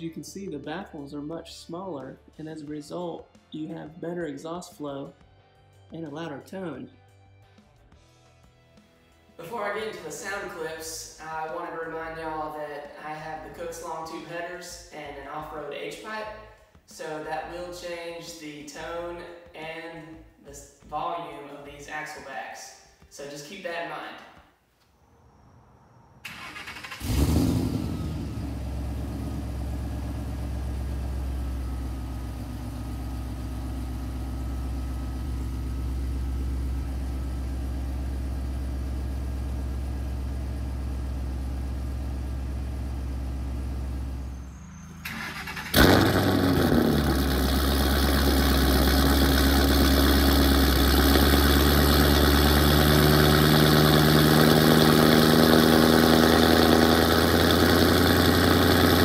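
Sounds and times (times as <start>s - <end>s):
car engine starting and idling: 26.2s - 59.0s.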